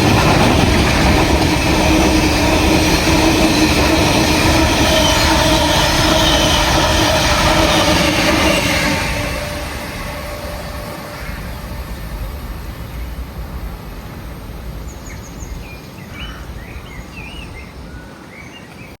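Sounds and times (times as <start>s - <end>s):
train rumbling: 0.0s - 19.0s
small birds chirping: 14.5s - 18.9s.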